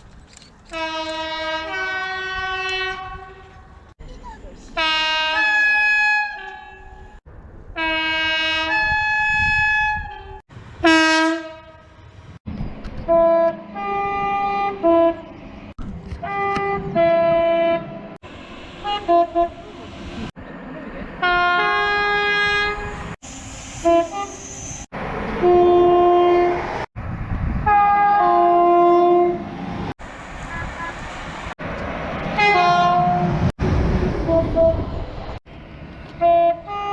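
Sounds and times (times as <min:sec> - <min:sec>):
two-tone train horn blasts: 0:00.7 - 0:03.7, 0:04.8 - 0:07.1, 0:07.8 - 0:12.0, 0:13.0 - 0:15.4, 0:16.2 - 0:18.2, 0:18.8 - 0:19.6, 0:21.2 - 0:23.0, 0:23.8 - 0:24.4, 0:25.4 - 0:26.7, 0:27.6 - 0:29.5, 0:32.4 - 0:33.4, 0:34.2 - 0:35.0, 0:36.2 - 0:36.9.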